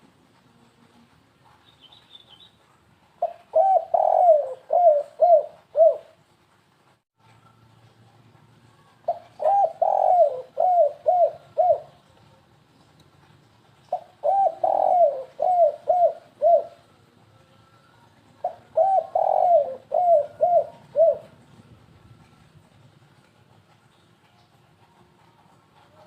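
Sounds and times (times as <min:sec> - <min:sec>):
dove cooing: 0:03.2 - 0:06.2, 0:09.0 - 0:12.1, 0:13.9 - 0:16.9, 0:18.4 - 0:21.6.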